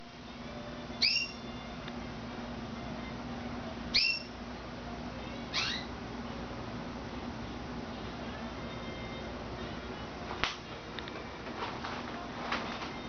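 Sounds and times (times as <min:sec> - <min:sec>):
steady low hum: 0:00.0 - 0:13.0
canary chirping: 0:00.9 - 0:01.6, 0:03.9 - 0:04.4, 0:05.5 - 0:06.0.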